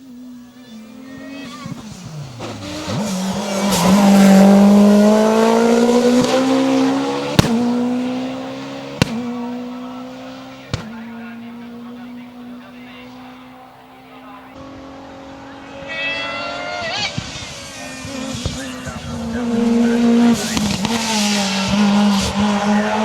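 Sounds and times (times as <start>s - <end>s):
rally car engine at full throttle: 0.0s - 23.0s
exhaust cracks: 1.5s - 12.1s, 15.9s - 23.0s.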